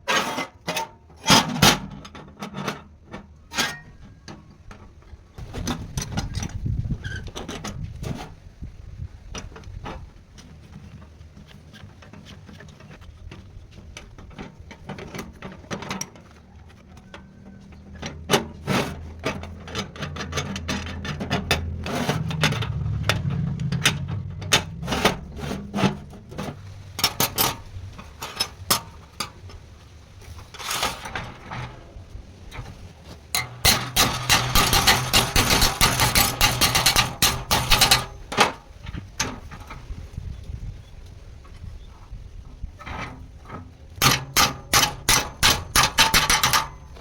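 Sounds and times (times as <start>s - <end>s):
metal parts knocking and clicking: 18.0s - 29.5s, 33.3s - 38.6s, 44.0s - 47.0s
low hum: 20.6s - 28.2s
rapid hammer blows: 33.4s - 38.3s.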